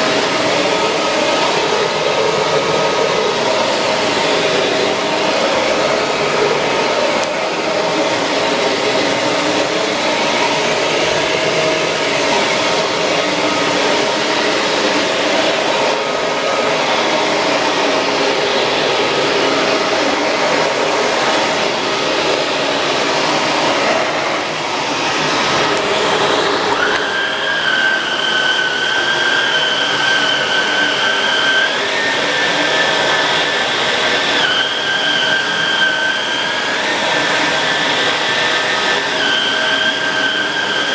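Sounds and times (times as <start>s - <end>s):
vacuum cleaner running: 0.0s - 40.9s
high whistling tone: 25.1s - 40.9s.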